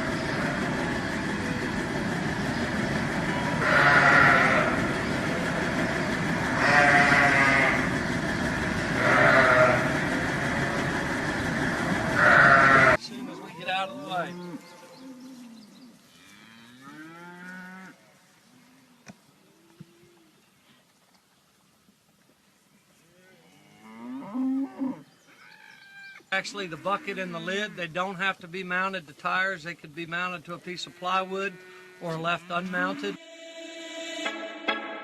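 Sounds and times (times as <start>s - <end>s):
mechanical hum: 0.0s - 20.5s, 22.6s - 28.6s
cattle mooing: 3.2s - 5.7s, 6.5s - 7.9s, 8.9s - 10.9s, 12.1s - 18.0s, 23.3s - 27.9s, 30.7s - 33.2s.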